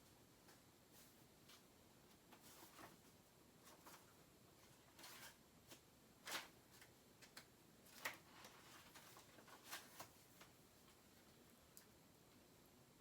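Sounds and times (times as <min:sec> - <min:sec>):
faint soft clicks and rustles: 0:00.0 - 0:12.5.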